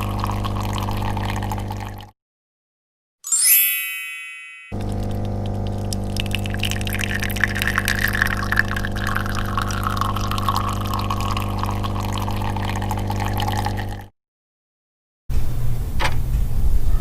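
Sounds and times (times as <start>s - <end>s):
coffee machine pump humming: 0.0s - 2.1s, 4.8s - 14.1s
coffee trickling into cup: 0.0s - 2.1s, 4.8s - 14.1s.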